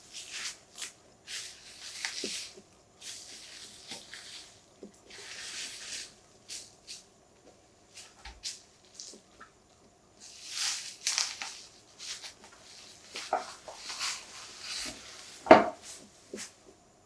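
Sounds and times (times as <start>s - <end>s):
rustles and scrapes of packaging: 0.0s - 7.1s, 10.2s - 16.6s.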